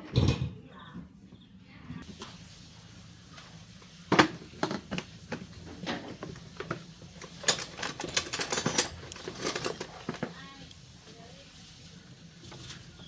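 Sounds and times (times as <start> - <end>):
hard objects clicking and knocking: 4.1 - 10.4.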